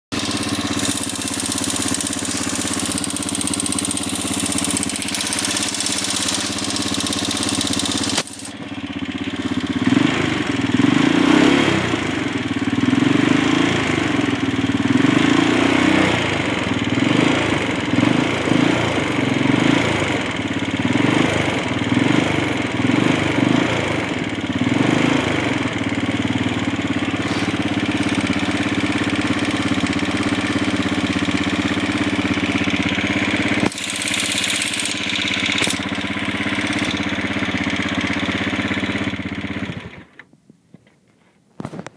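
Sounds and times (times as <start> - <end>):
motorcycle engine ticking: 0.1 - 15.4, 16.2 - 40.3.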